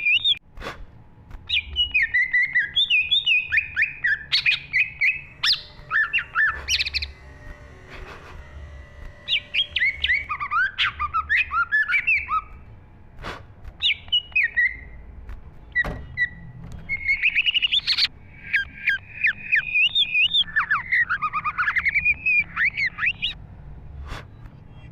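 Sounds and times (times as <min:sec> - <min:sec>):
bird singing whistled chatter: 0:01.5 - 0:07.2, 0:09.3 - 0:12.6, 0:13.8 - 0:15.0, 0:15.6 - 0:23.4.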